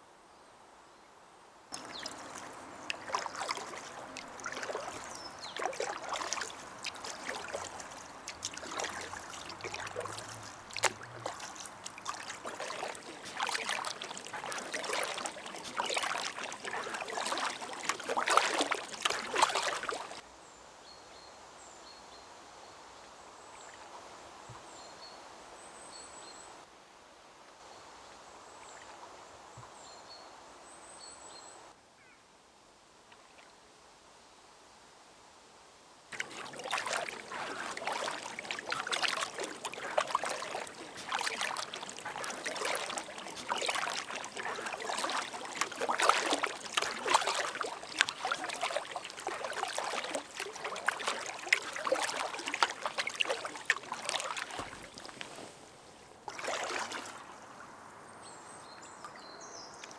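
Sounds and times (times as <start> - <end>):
paddle strokes splashing: 1.7 - 20.2, 36.1 - 59.9
steady water hiss: 1.7 - 20.2, 36.2 - 59.9.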